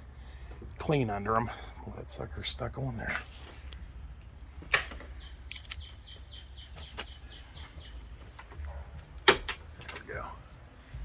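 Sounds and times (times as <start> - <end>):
bird chirping: 3.3 - 8.9
sharp knocks on metal latch: 9.1 - 10.1.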